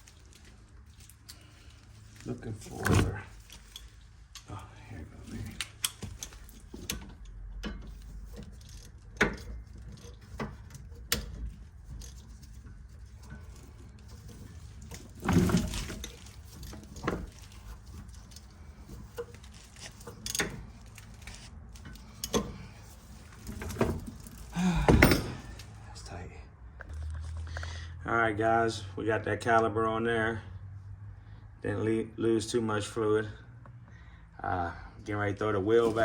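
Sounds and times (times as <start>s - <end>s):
heavy metal clunk: 23.4s - 25.6s.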